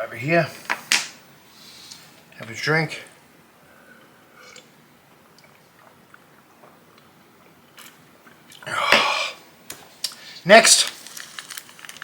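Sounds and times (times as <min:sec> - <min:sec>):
person swallowing: 0:08.5 - 0:09.4.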